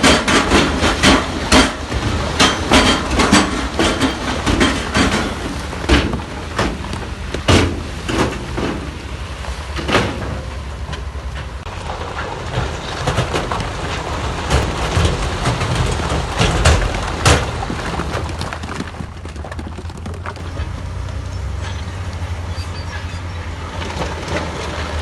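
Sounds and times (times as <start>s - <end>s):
metal and rock clanking: 0.0s - 9.1s, 9.7s - 25.0s
heavy machinery diesel hum: 0.0s - 18.5s, 20.2s - 25.0s.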